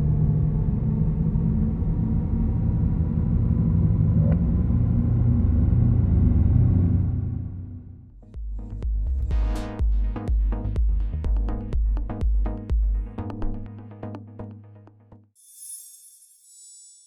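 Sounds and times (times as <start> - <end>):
electric car drive hum: 0.0 - 8.1.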